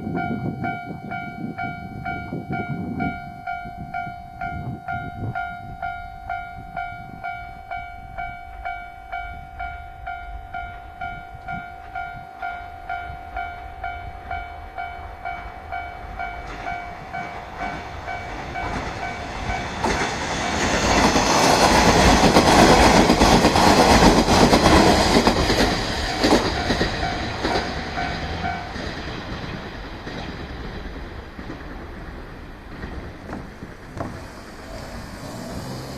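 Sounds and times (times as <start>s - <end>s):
level-crossing warning bell: 0.0s - 29.4s
diesel train passing: 0.0s - 35.9s
rail-joint clacks: 16.2s - 35.9s.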